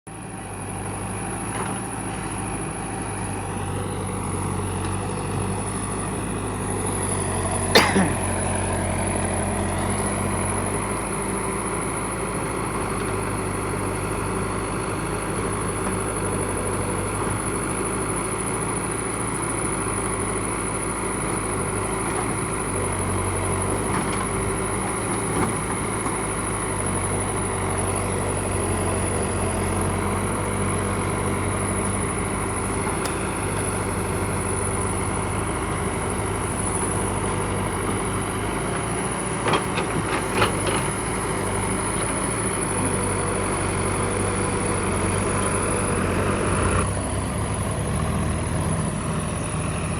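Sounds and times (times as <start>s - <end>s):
backhoe diesel engine running: 0.1s - 49.9s.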